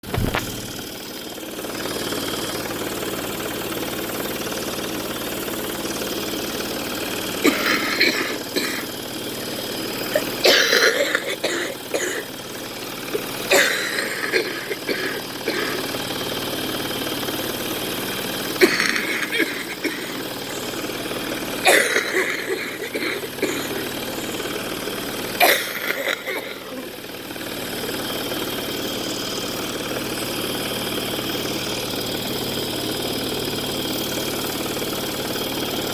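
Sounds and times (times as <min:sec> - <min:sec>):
machine hum: 0:00.0 - 0:35.9
woman coughing: 0:07.4 - 0:09.0, 0:10.0 - 0:16.0, 0:18.6 - 0:20.4, 0:21.6 - 0:24.4, 0:25.4 - 0:27.1.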